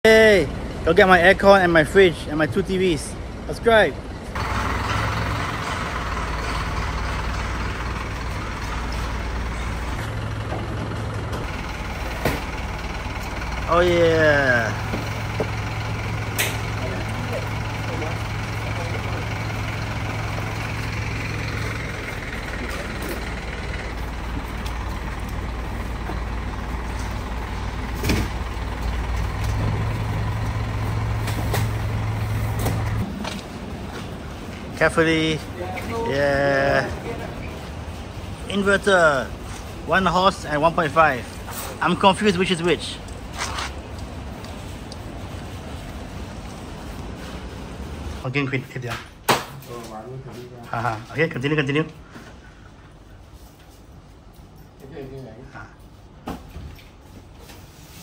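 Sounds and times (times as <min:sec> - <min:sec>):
truck engine idling: 0:00.1 - 0:48.6.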